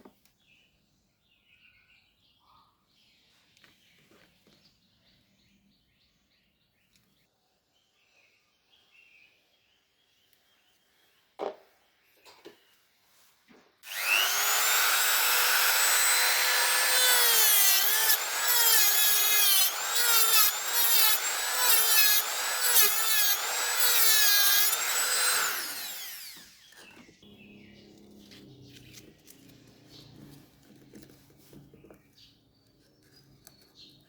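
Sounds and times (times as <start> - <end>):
electric power tool whining: 13.8 - 30.4.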